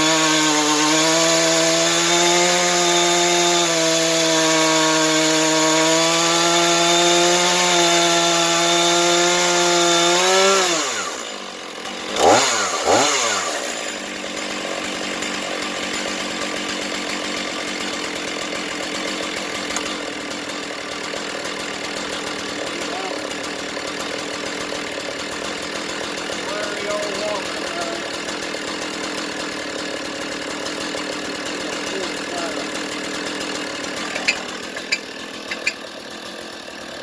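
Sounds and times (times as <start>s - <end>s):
chainsaw cutting log: 0.0s - 37.0s.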